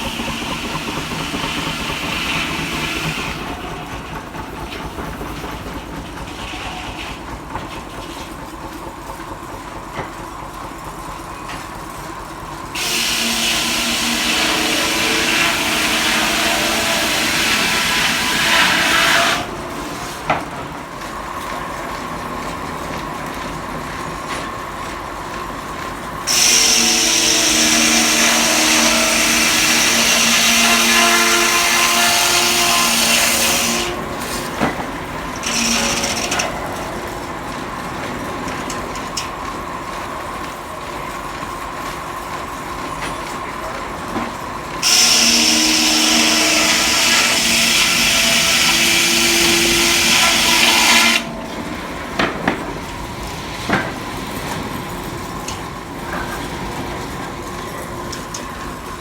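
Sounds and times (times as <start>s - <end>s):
spinning saw blade hum: 0.0s - 7.6s, 12.7s - 19.7s, 26.3s - 36.9s, 44.8s - 51.7s
saw blade whining through log: 0.0s - 8.1s, 12.8s - 20.4s, 26.2s - 36.9s, 44.8s - 52.6s.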